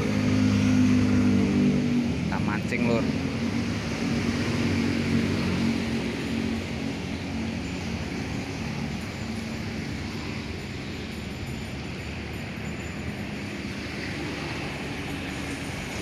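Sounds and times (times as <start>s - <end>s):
urban traffic noise: 0.0s - 16.0s
vehicle engine humming: 0.0s - 16.0s.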